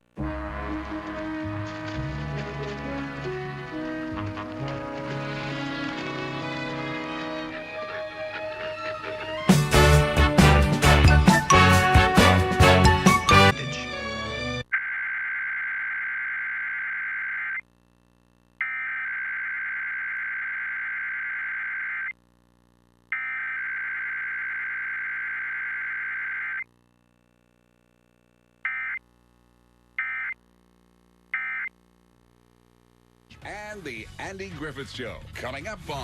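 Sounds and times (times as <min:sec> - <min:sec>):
buzzing digital data bursts: 0:23.1 - 0:26.6.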